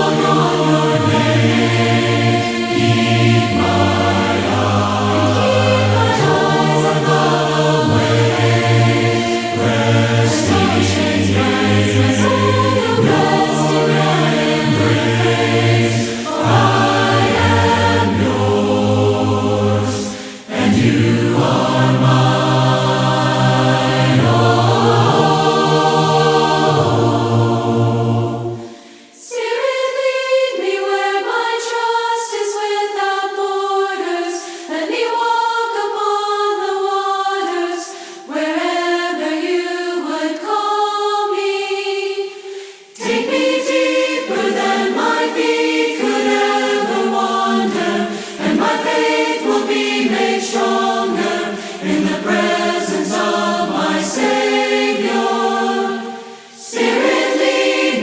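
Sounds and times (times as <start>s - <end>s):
a cappella group singing: 0.0s - 58.0s.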